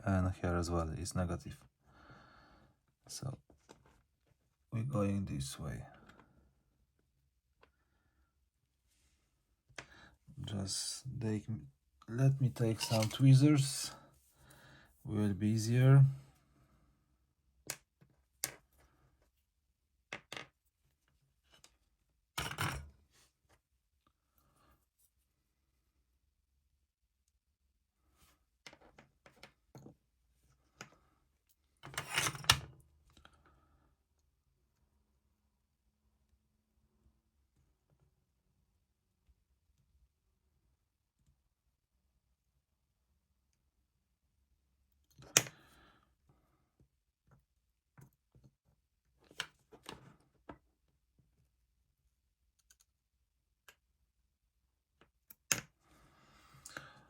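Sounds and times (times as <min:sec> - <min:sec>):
light clicks and taps of tools: 0:12.6 - 0:13.2, 0:52.5 - 0:53.0, 0:53.6 - 0:53.9
tools clattering: 0:12.6 - 0:13.3.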